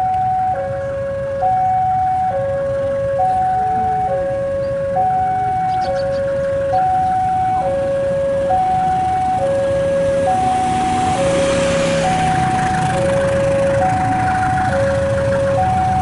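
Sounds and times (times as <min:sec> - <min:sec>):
level crossing two-tone alarm: 0:00.0 - 0:16.0.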